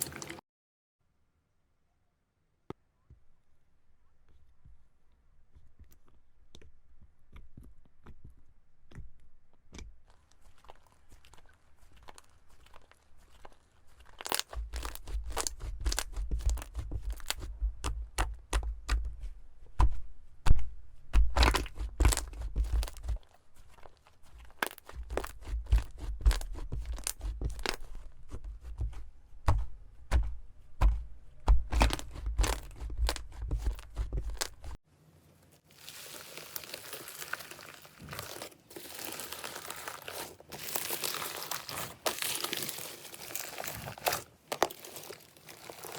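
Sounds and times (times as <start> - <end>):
slime crackling and popping: 10.0 - 19.1, 21.1 - 29.6, 31.6 - 34.8, 35.7 - 45.9.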